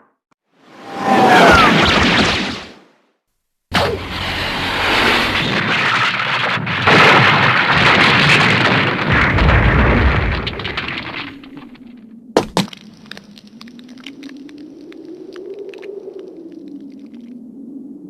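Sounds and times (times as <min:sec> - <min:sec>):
explosion blast rushing noise: 0:03.7 - 0:10.6
sharp crack: 0:03.7 - 0:11.8.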